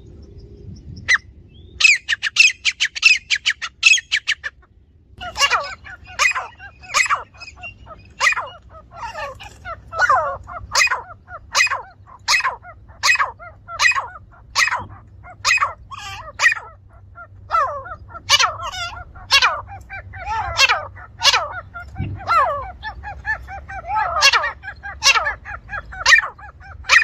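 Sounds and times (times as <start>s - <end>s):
francolin harsh call: 5.2s - 9.4s.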